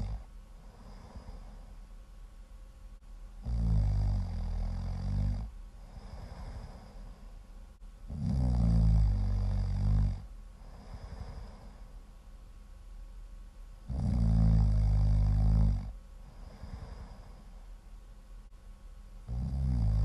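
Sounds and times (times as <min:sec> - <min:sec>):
loud low snoring: 0:00.0 - 0:01.7, 0:03.4 - 0:07.2, 0:08.1 - 0:11.9, 0:13.9 - 0:17.4, 0:19.2 - 0:20.0
soft breathing: 0:00.0 - 0:02.0, 0:05.7 - 0:07.8, 0:10.5 - 0:12.3, 0:16.2 - 0:18.6.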